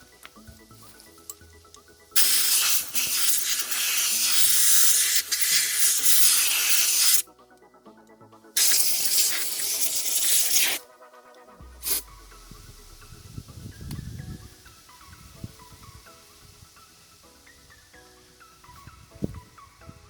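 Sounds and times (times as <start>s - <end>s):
background music: 0.0s - 20.0s
loud hissing spray: 2.2s - 7.2s, 8.6s - 10.8s, 11.8s - 12.1s.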